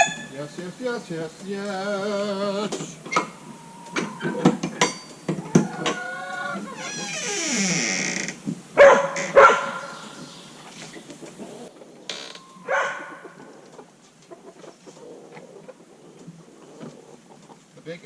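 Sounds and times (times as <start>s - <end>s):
hens clucking and scuffling: 0.0s - 18.0s
dog barking: 8.8s - 10.1s, 12.6s - 13.4s.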